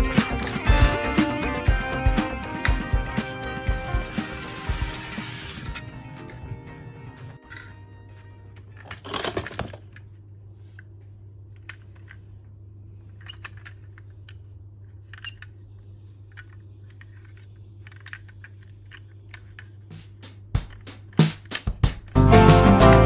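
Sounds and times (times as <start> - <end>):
clattering rattle: 8.8 - 9.9
plastic toy cars clicking: 8.8 - 19.9.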